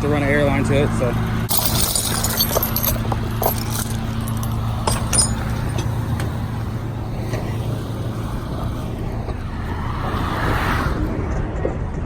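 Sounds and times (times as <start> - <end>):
diesel engine idling: 0.0 - 9.6.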